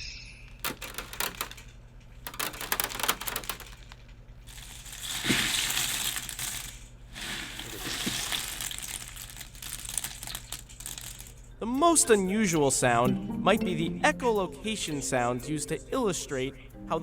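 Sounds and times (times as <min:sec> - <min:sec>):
crackling clicks and snaps: 0:00.6 - 0:06.9, 0:07.6 - 0:11.5
crunching: 0:00.6 - 0:11.6.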